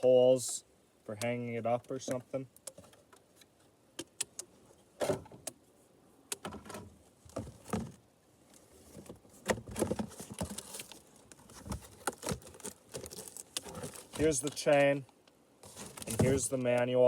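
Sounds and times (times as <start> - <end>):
packaging rustling: 8.8 - 14.8, 15.6 - 16.6.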